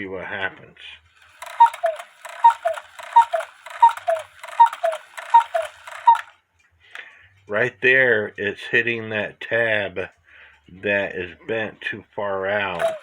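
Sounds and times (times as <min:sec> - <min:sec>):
cuckoo clock two-note calls: 0:01.4 - 0:06.3, 0:12.8 - 0:13.0.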